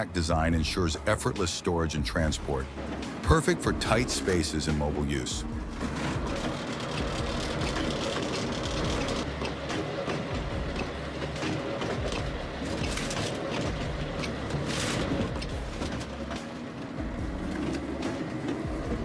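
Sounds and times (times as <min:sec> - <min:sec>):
firewood processor droning: 0:00.0 - 0:19.0
machinery rattling: 0:00.0 - 0:19.0
wood cracking and knocking: 0:05.8 - 0:16.5.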